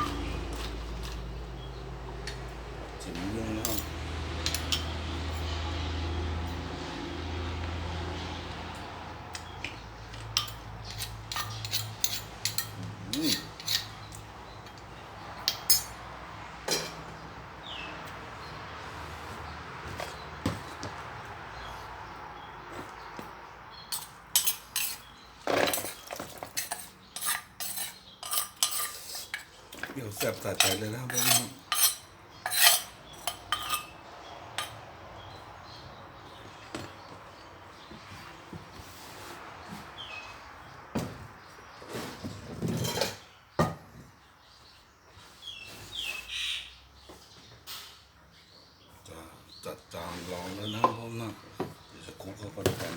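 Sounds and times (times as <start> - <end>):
utensils clinking against a dish: 0.0 - 1.3, 3.2 - 5.7, 9.4 - 14.8, 15.4 - 16.1, 16.7 - 17.1, 23.9 - 34.8, 42.6 - 43.3.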